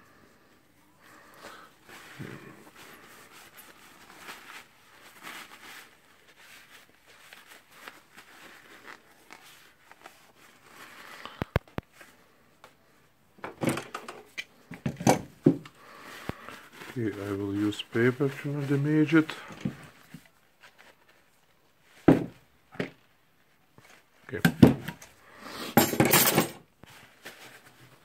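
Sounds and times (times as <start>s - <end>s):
paper crinkling: 1.1s - 13.0s, 15.7s - 22.0s, 26.8s - 28.0s
tool parts rustling and ticking: 13.4s - 15.3s.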